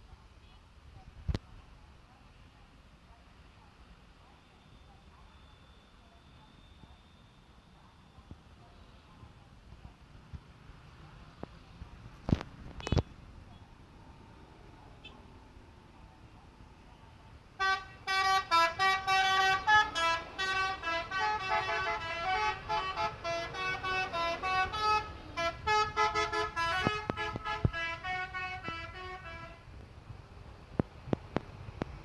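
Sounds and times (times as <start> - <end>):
multi-tone bus horns tooting: 17.5 - 29.7.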